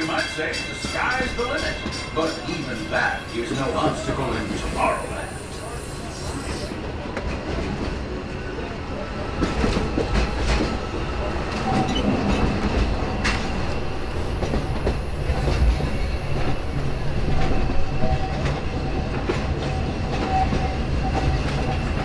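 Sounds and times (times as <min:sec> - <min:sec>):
train rumble: 0:00.0 - 0:22.0
faint wheel squeal: 0:03.1 - 0:06.8.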